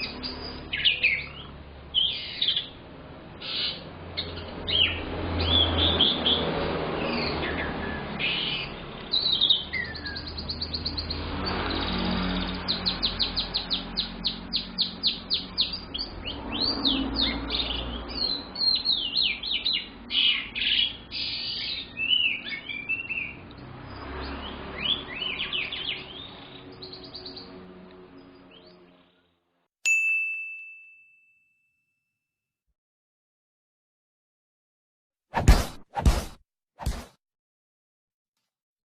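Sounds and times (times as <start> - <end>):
canary singing trills: 0.0 - 29.2.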